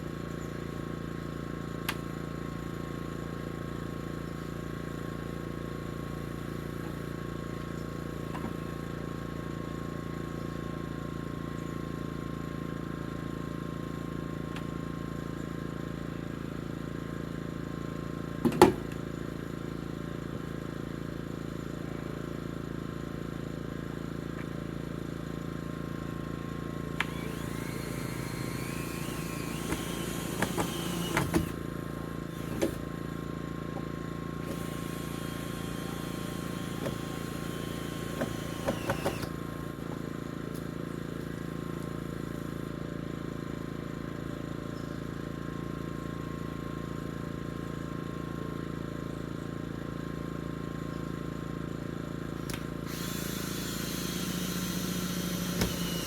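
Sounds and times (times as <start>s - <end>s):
steady mechanical hum: 0.0s - 56.0s
power drill spinning up: 26.9s - 33.0s, 34.4s - 39.8s, 52.8s - 56.0s.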